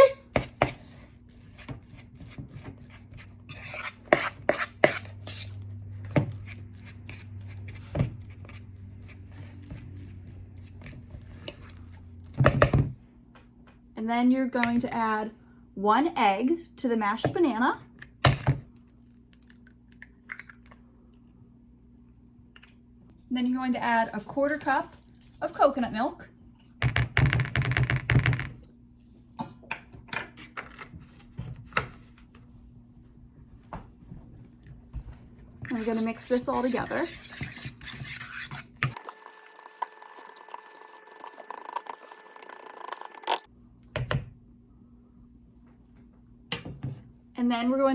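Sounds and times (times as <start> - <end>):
banana being mashed in bowl: 0.0 - 12.4, 35.6 - 43.5.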